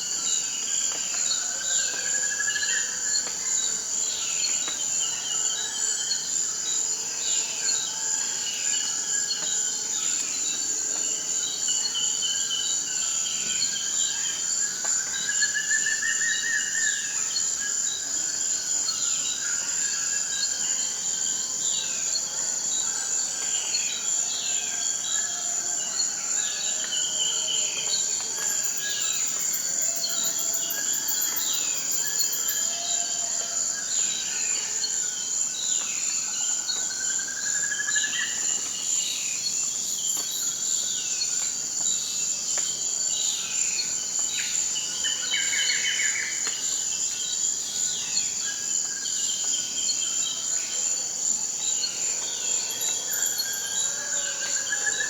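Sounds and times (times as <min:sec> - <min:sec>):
high insect drone: 0:26.0 - 0:55.0.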